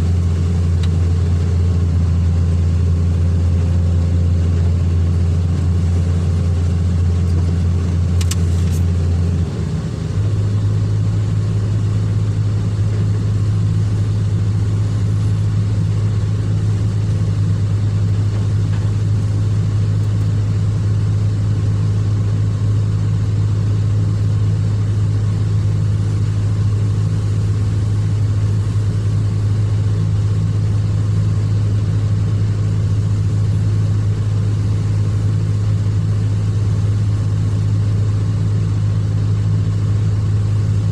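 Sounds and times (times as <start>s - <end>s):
excavator diesel engine running: 0.0s - 40.9s.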